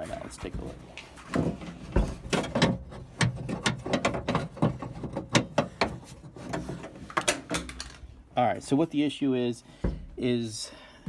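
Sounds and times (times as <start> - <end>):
metal mechanism clicking and clunking: 0.5 - 8.1.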